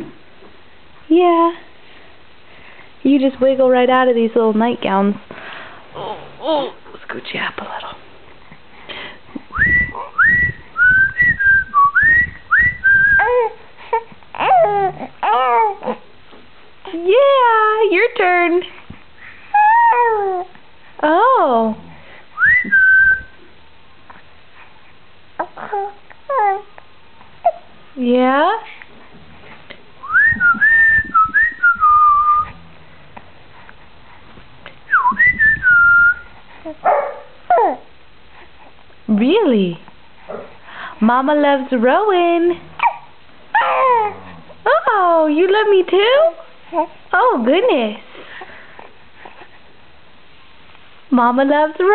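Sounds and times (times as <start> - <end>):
person whistling: 9.5 - 13.3, 22.4 - 23.3, 30.0 - 32.6, 34.9 - 36.3
baby squealing: 19.6 - 20.4, 42.8 - 44.2.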